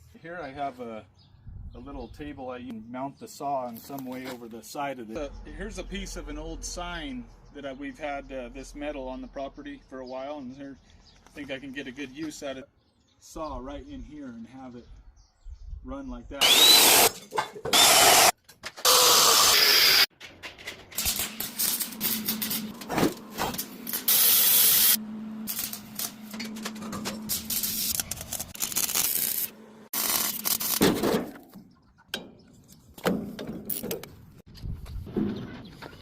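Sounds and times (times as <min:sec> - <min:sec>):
power tool running: 0:16.4 - 0:20.1, 0:23.8 - 0:26.5
metal parts knocking and clanking: 0:20.1 - 0:24.1.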